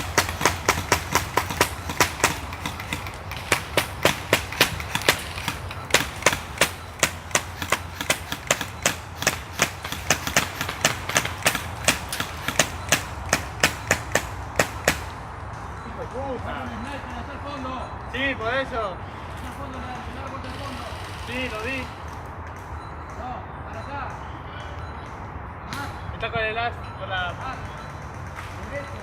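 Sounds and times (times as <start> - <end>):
running footsteps: 0.0 - 17.3.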